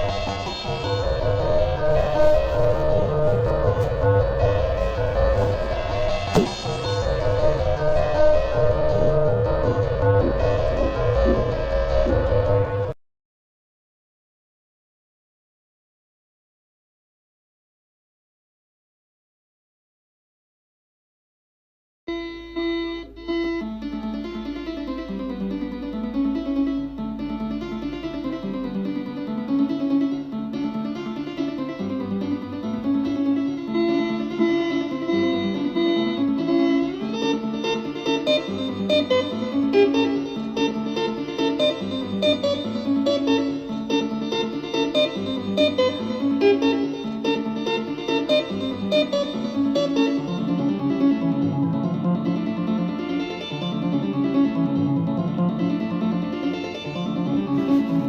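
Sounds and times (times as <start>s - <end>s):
plucked guitar melody: 0.0s - 13.0s, 22.1s - 58.0s
low bass line: 1.1s - 12.9s.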